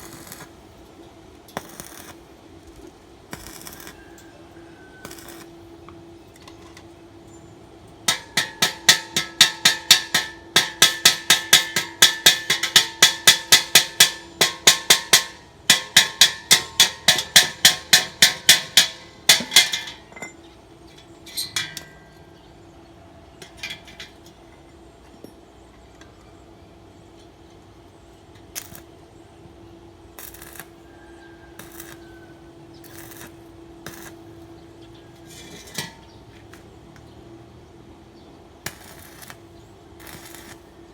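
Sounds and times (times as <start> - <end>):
hammer striking metal: 8.1 - 20.4.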